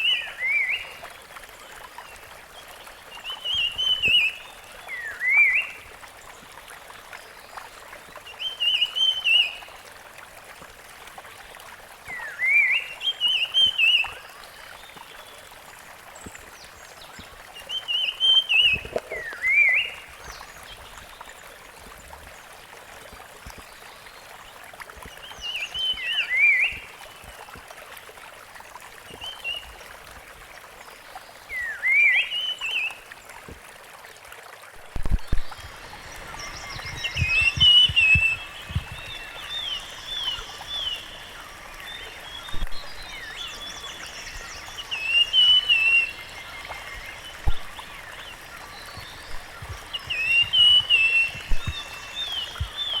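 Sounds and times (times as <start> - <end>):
birds chirping: 35.3 - 53.0.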